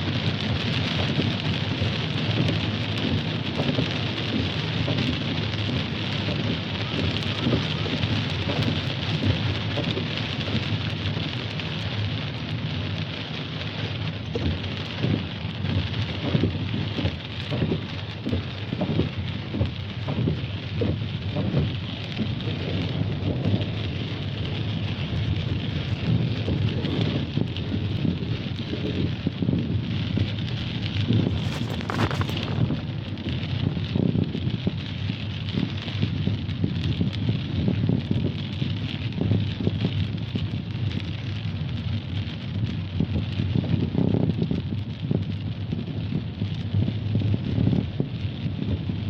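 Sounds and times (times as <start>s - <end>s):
rain splashing on hard surfaces: 0.0s - 49.0s
low rumble: 15.8s - 38.6s.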